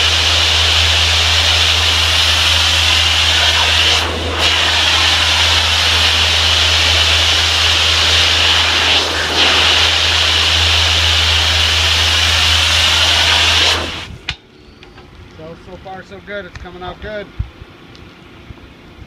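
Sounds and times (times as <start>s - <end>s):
pressure washer spraying: 0.0s - 14.2s
motor humming: 0.0s - 15.1s.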